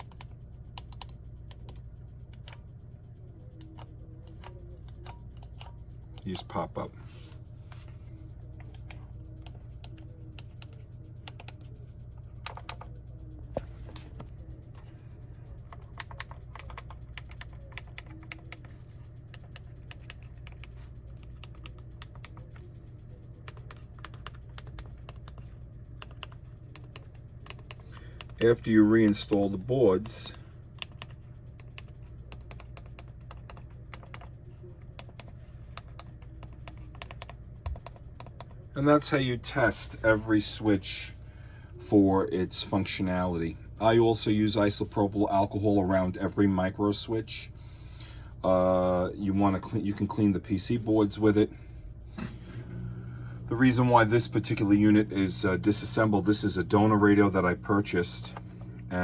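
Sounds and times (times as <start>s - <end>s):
steady low hum: 0.0s - 59.0s.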